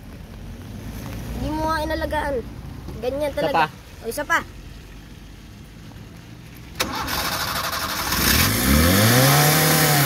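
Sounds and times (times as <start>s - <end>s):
starter motor cranking: 6.8s - 8.6s
engine starting and revving: 6.8s - 10.0s.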